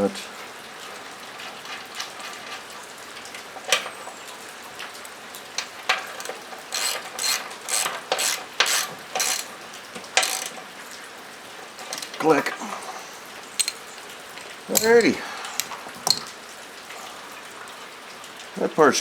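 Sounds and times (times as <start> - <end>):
rain on a metal roof: 0.0 - 19.0
ratchet wrench clicking: 6.1 - 9.5, 10.2 - 10.6, 11.9 - 12.2, 13.6 - 13.9, 14.7 - 16.2.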